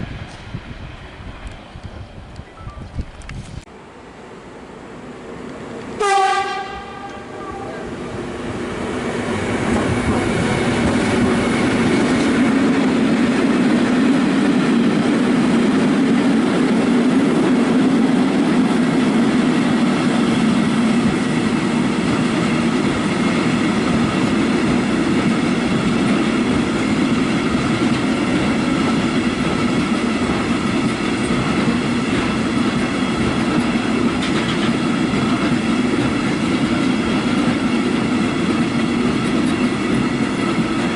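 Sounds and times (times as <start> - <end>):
freight train rumbling: 0.0 - 40.9
wheels clattering over rail joints: 33.2 - 37.7.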